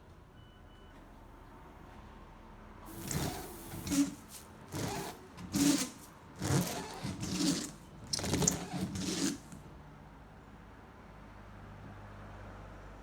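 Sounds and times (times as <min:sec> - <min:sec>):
wiper blade squeaking on windscreen: 0:02.9 - 0:09.6.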